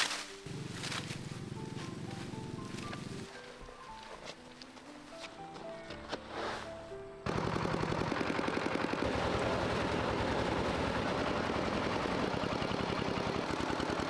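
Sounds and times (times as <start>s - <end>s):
small engine running: 0.5s - 3.3s, 7.2s - 14.0s.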